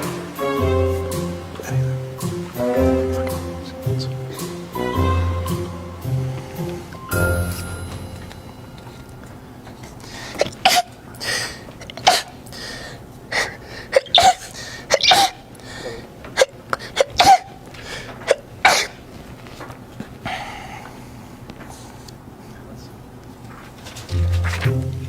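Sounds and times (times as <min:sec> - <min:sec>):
person sneezing: 0:10.3 - 0:12.4, 0:13.4 - 0:17.6, 0:18.3 - 0:19.0.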